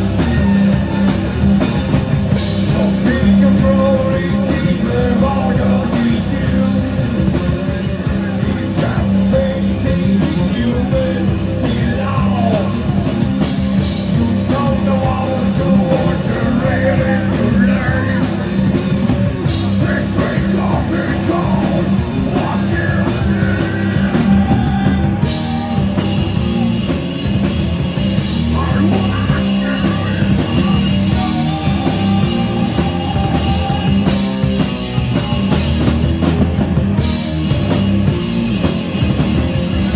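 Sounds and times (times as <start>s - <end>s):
singer yelling: 0.0s - 35.6s
live rock band playing: 0.0s - 39.9s.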